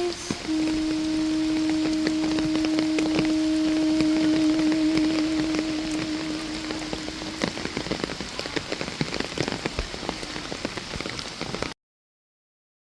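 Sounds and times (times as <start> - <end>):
held low hymn note: 0.0 - 8.3
rain falling: 0.0 - 11.8
raindrops striking close by: 0.0 - 11.8.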